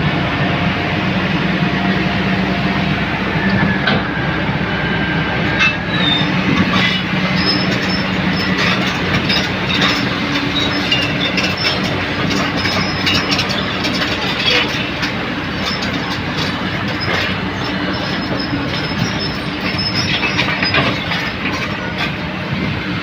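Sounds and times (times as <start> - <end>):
excavator diesel engine: 0.0 - 23.0
short high squeals: 5.6 - 11.9, 16.9 - 21.3
metal clanks: 5.6 - 22.2.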